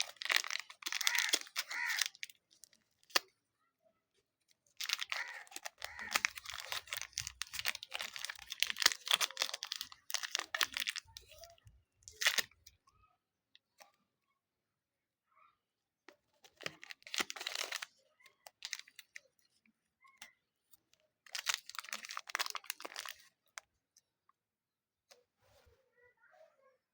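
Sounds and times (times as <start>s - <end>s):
clay squeezed by hand: 0.0s - 2.3s.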